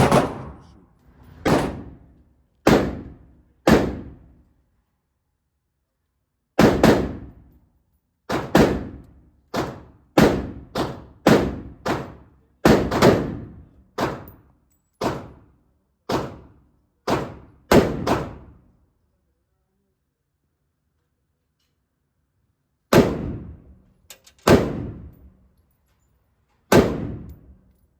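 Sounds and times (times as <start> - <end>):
handgun gunshots: 0.0 - 0.7.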